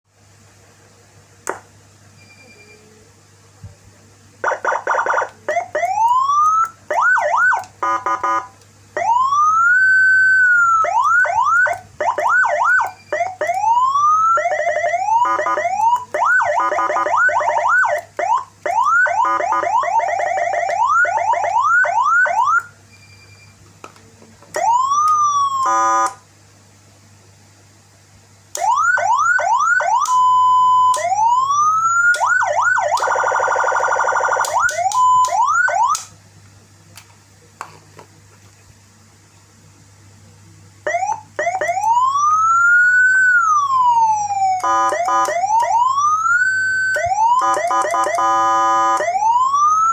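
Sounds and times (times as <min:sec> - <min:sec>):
electronic vehicle siren: 0:04.4 - 0:22.7, 0:24.6 - 0:26.2, 0:28.6 - 0:36.1, 0:40.9 - 0:49.9.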